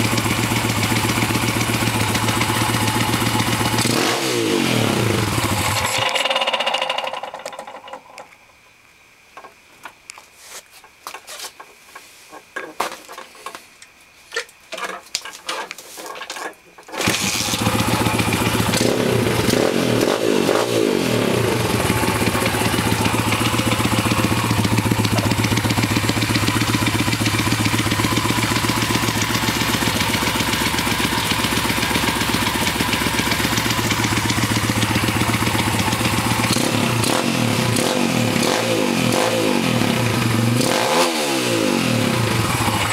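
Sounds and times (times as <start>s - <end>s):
motorbike engine revving and idling: 0.0s - 8.0s, 17.0s - 42.9s
motorbike engine winding down: 0.0s - 8.2s, 17.0s - 42.9s
clicks and knocks: 6.0s - 8.5s, 10.8s - 17.0s.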